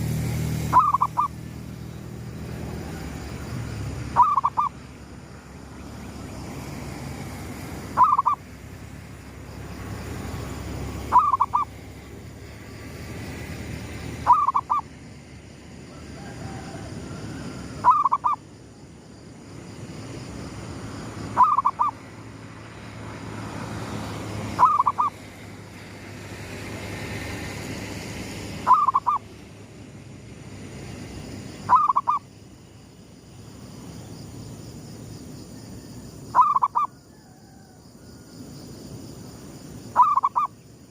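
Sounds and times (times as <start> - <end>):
dove cooing: 0.7 - 1.4, 4.1 - 4.8, 8.0 - 8.4, 11.1 - 11.7, 14.2 - 14.9, 16.0 - 18.4, 21.4 - 22.0, 24.6 - 25.2, 28.7 - 29.3, 31.7 - 32.2, 36.4 - 36.9, 40.0 - 40.5.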